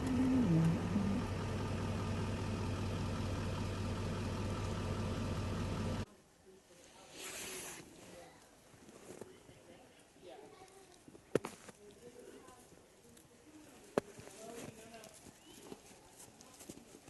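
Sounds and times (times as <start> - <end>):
vehicle engine running: 0.0 - 6.0.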